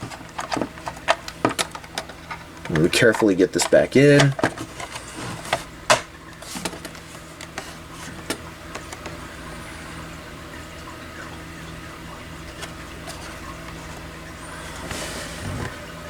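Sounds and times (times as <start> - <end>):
handling noise: 0.0 - 9.2
steady low hum: 0.0 - 16.0.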